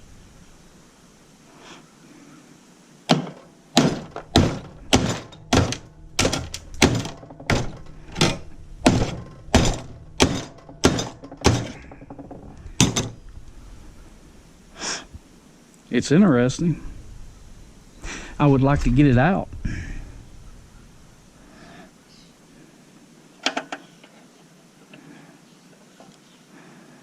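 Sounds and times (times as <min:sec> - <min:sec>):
hammer blows on electronics: 0:03.1 - 0:13.2.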